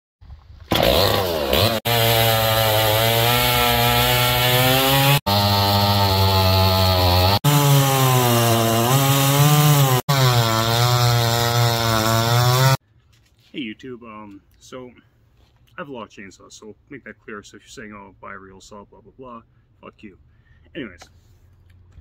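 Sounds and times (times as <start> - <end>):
chainsaw cutting wood: 0.6 - 12.8.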